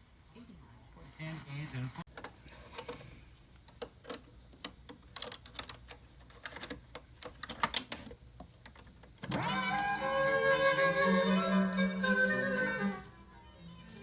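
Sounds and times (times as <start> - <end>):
music: 9.3 - 14.0.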